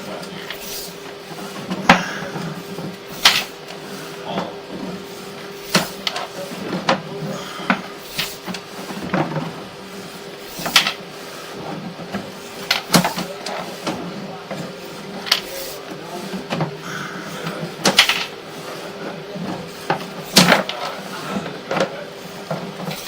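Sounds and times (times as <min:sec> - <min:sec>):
steady hum: 0:00.0 - 0:23.0
sharp clicks and knocks: 0:17.8 - 0:18.4.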